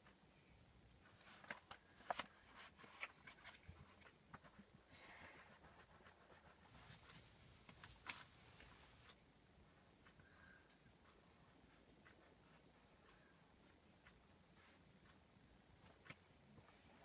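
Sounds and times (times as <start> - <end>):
pen scratching on paper: 3.8 - 7.4.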